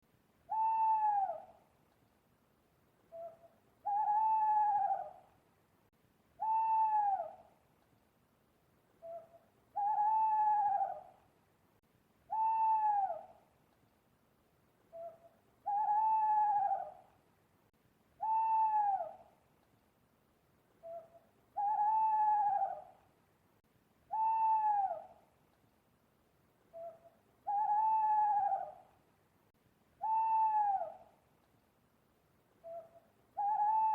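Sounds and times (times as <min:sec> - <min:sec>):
owl hooting: 0:00.5 - 0:01.6, 0:03.1 - 0:05.3, 0:06.4 - 0:07.5, 0:09.0 - 0:11.2, 0:12.3 - 0:13.4, 0:14.9 - 0:17.1, 0:18.2 - 0:19.3, 0:20.8 - 0:23.0, 0:24.1 - 0:25.3, 0:26.7 - 0:29.0, 0:30.0 - 0:31.2, 0:32.6 - 0:33.9.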